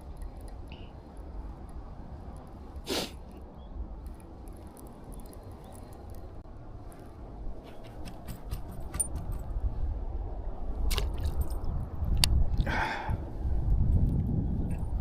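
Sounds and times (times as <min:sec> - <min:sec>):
short rushing hiss: 0:02.8 - 0:03.2
sharp clicks and scrapes: 0:07.6 - 0:09.5.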